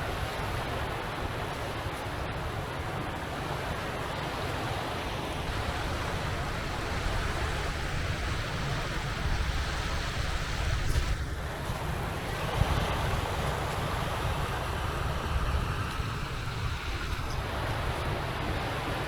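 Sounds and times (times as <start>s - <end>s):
sea waves washing on shore: 0.0s - 19.0s
wind rumbling on microphone: 0.0s - 19.0s.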